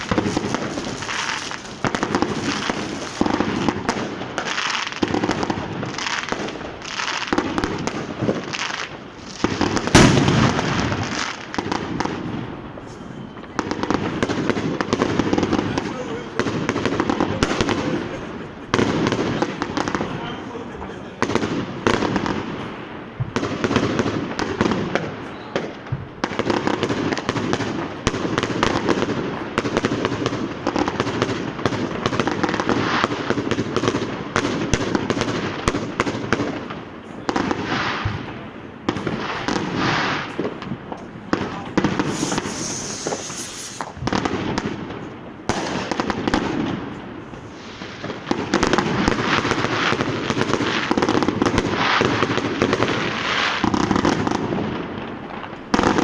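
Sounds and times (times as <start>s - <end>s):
fireworks and firecrackers banging: 0.0s - 56.0s.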